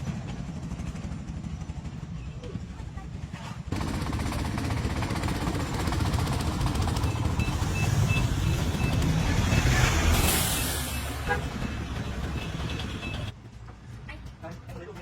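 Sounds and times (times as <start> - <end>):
truck engine running: 0.0 - 13.3.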